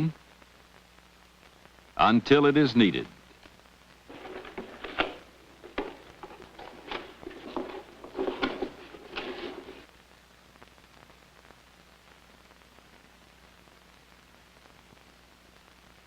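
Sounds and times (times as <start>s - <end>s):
faint steady hiss: 0.0s - 16.0s
boxes being handled: 4.1s - 9.9s.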